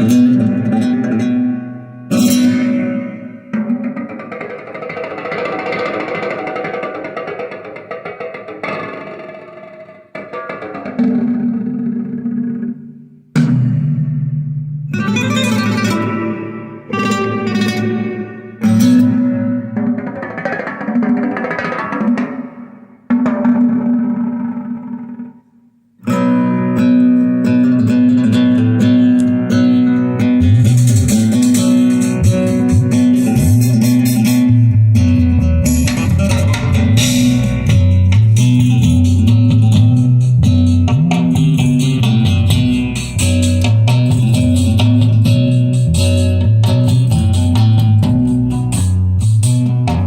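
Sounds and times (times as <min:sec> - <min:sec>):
plucked string music: 0:00.0 - 0:06.2, 0:14.9 - 0:20.8, 0:26.0 - 0:50.0
heavy bass line: 0:30.2 - 0:50.0.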